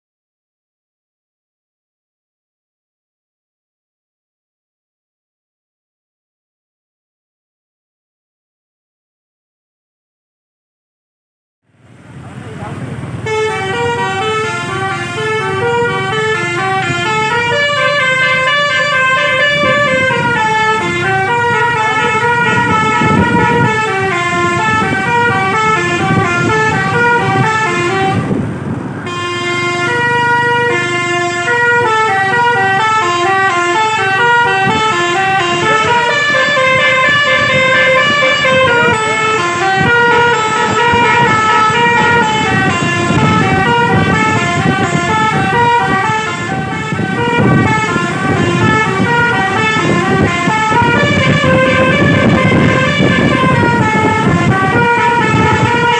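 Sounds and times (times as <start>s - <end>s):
bus engines: 11.7s - 55.9s
multi-tone bus horns playing melody: 13.1s - 55.9s.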